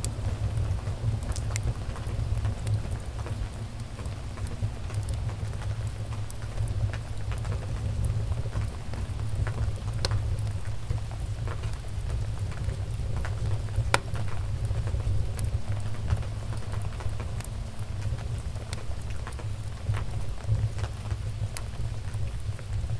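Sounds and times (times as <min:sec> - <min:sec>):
wood fire crackling: 0:00.0 - 0:22.9
fire pops: 0:13.2 - 0:14.4.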